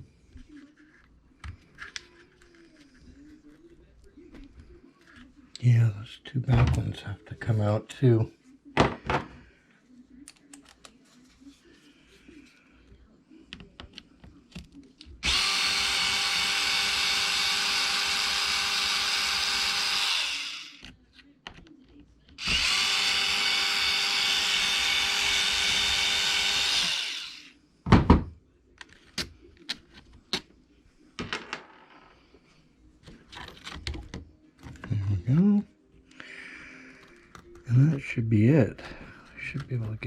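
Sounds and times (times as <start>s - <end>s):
power driver whining: 15.2s - 20.8s, 22.4s - 27.5s.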